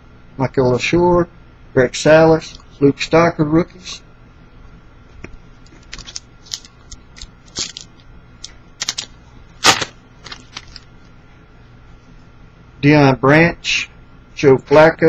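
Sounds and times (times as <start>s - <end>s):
cards clicking and snapping: 5.8s - 10.9s
foil pack tearing and crinkling: 7.5s - 7.9s, 8.8s - 10.9s.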